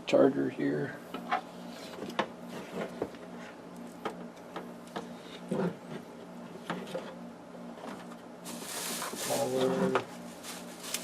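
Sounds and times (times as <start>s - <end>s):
low steady hum: 0.0s - 11.0s
hands handling wires: 7.8s - 11.0s.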